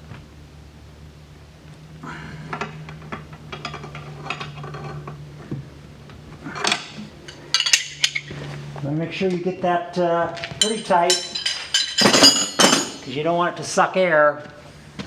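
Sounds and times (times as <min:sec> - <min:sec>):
metal clatter: 0:02.5 - 0:05.2, 0:06.5 - 0:08.4, 0:10.4 - 0:13.2
metal wrenches clicking and clinking: 0:02.5 - 0:05.2, 0:06.5 - 0:08.3, 0:10.4 - 0:13.2.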